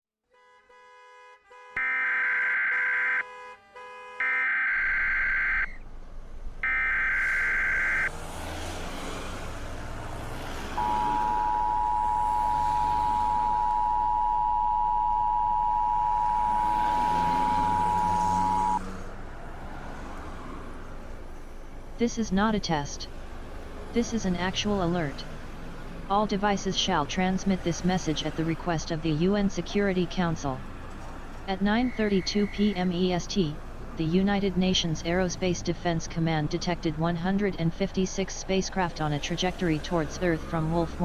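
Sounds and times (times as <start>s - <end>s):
two-tone attention beep: 10.8s - 18.8s.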